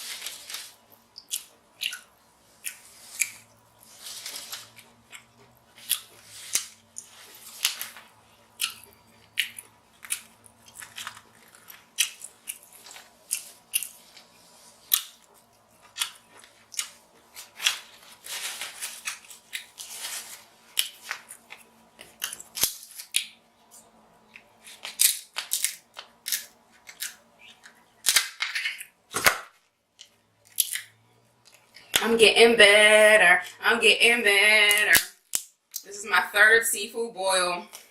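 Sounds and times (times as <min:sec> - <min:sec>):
chewing: 0:00.3 - 0:18.2
crab shells snapping and cracking: 0:22.0 - 0:23.4, 0:24.8 - 0:29.5, 0:30.5 - 0:30.9, 0:35.0 - 0:35.8.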